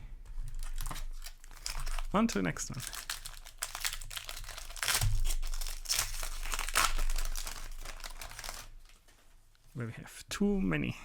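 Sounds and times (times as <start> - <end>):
foil wrapper tearing and crinkling: 0.2 - 9.0.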